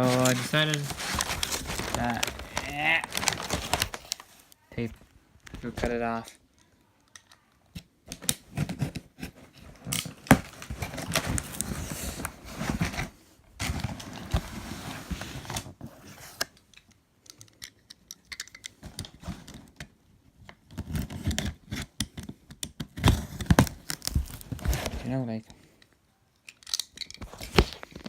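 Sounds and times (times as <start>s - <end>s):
packing tape scraped off box: 0.0s - 4.1s.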